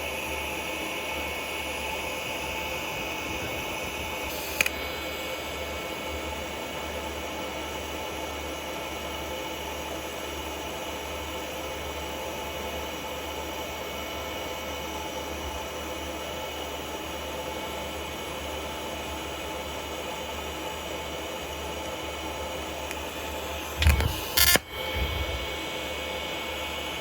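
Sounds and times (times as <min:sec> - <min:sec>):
welding arc hissing and buzzing: 0:03.0 - 0:05.5, 0:23.0 - 0:25.8.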